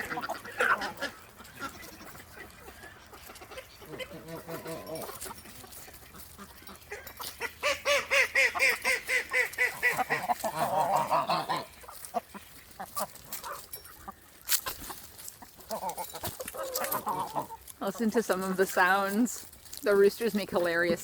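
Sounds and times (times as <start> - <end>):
waterfowl honking calls: 0.0 - 5.3, 5.9 - 13.6.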